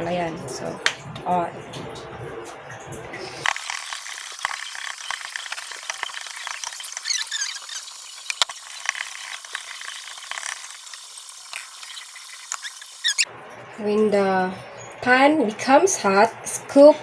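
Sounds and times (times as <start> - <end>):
oil sizzling in a frying pan: 3.5 - 13.3.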